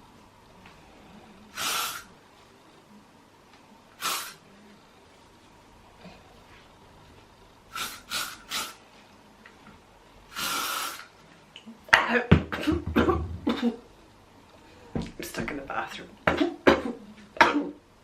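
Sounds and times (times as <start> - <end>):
aerosol hairspray spraying: 1.6 - 2.1, 4.0 - 4.4, 7.7 - 8.8, 10.3 - 11.1
person coughing and spluttering: 11.9 - 13.8, 16.3 - 17.8.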